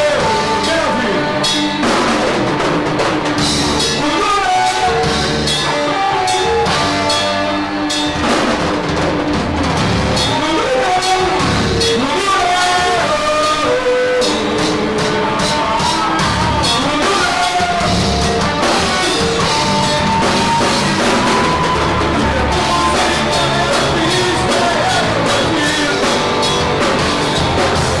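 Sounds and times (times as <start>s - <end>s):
live rock band playing: 0.0s - 28.0s
bass drum: 14.4s - 28.0s.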